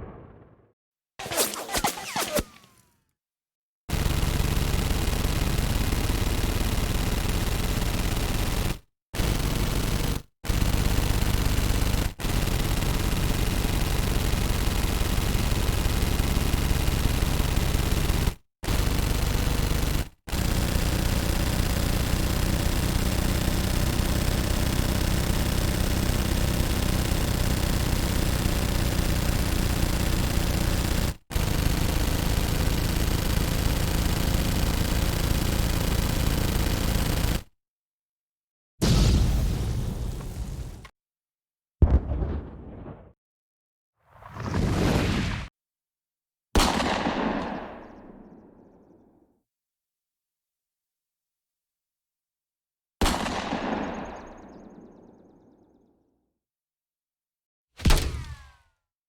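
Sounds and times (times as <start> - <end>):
automatic gunfire: 1.2 - 2.8, 46.6 - 48.6, 53.0 - 55.0.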